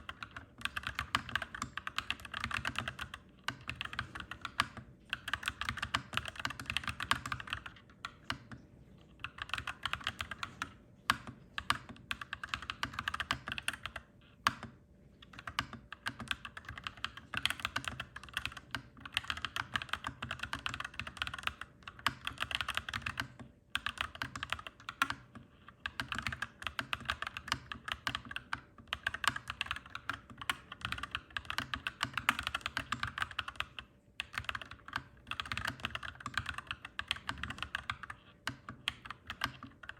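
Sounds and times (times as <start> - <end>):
mechanical keyboard typing: 0.0 - 8.6, 9.2 - 39.9.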